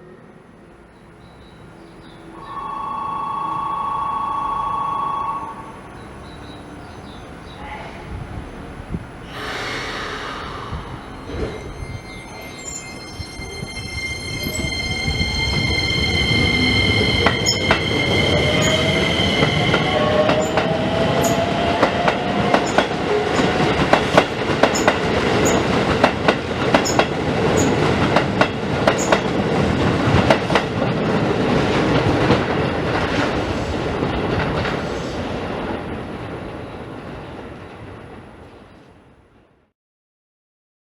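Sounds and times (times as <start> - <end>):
high electric whine: 2.4 - 6.0
train motor whine: 2.4 - 6.2.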